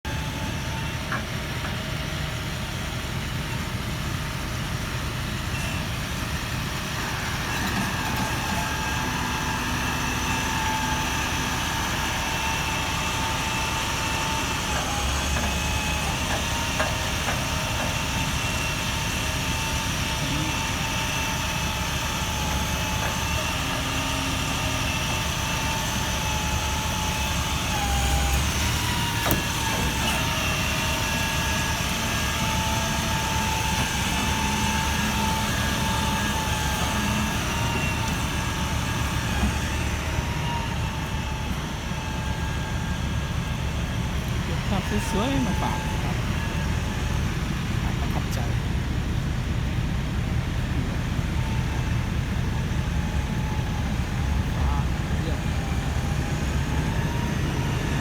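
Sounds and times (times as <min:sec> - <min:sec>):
truck engine rumbling: 0:00.0 - 0:58.0
high engine whine: 0:00.1 - 0:58.0.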